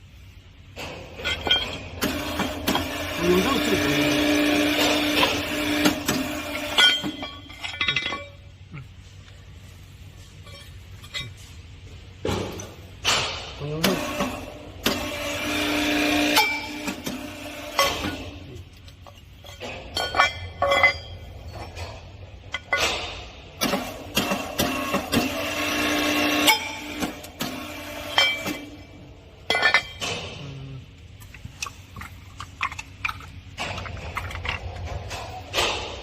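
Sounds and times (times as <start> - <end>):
metallic clinks and knocks: 0.8 - 2.0, 6.7 - 8.6, 10.2 - 13.4, 17.8 - 23.2
hydraulic pump humming: 0.8 - 8.4, 12.2 - 21.1, 22.6 - 35.6.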